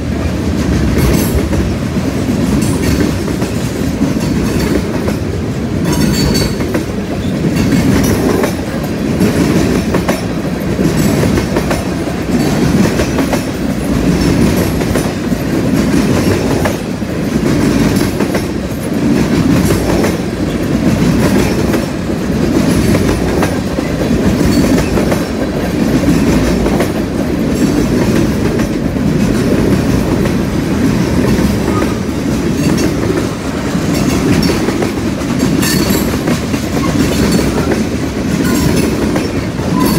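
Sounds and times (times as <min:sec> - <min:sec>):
train cars rumbling past: 0:00.0 - 0:39.9
wheels clicking over rail joints: 0:00.1 - 0:39.9.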